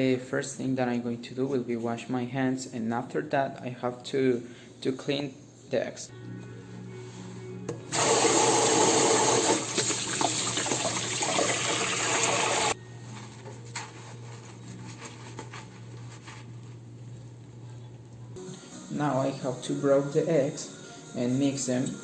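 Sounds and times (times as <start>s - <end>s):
tap water running: 7.9s - 12.8s
faint handling sounds: 12.9s - 18.4s.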